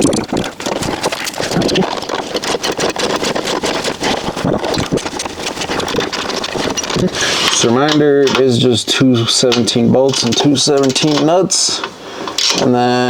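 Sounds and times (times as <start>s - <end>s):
wrench rattling clicks: 9.4s - 12.8s.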